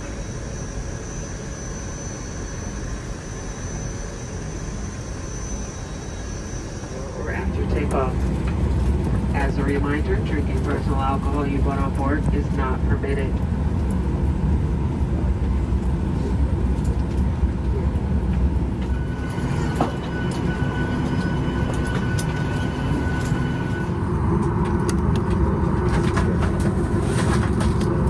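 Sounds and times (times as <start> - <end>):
faint high whine: 0.0 - 13.4, 18.5 - 24.5
aircraft cabin engine rumble: 6.8 - 28.0.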